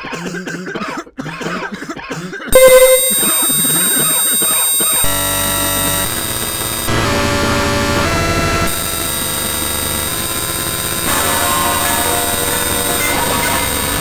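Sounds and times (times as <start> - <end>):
person coughing: 0.0 - 2.6
harsh blare of held tones: 2.6 - 14.0.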